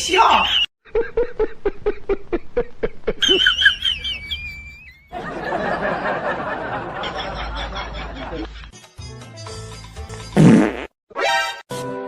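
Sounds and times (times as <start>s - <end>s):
person snickering: 0.9s - 5.0s.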